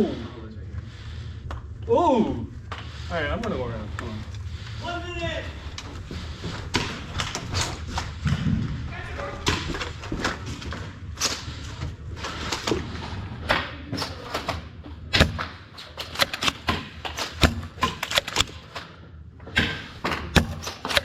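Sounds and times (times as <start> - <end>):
darts striking hard surfaces: 15.1 - 18.5, 19.5 - 21.0.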